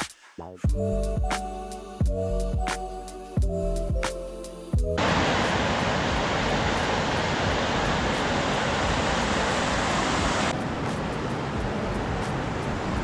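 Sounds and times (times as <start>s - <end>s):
white water rushing: 5.0s - 13.0s.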